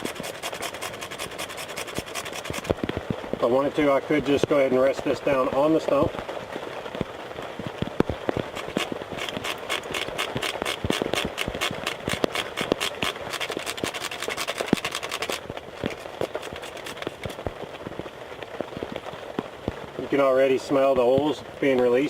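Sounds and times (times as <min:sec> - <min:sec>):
wood scraped on metal grater: 0:00.0 - 0:02.8, 0:08.5 - 0:17.4.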